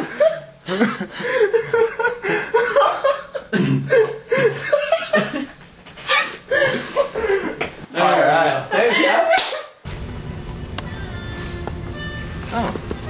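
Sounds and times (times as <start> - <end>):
people laughing: 0.0 - 5.6.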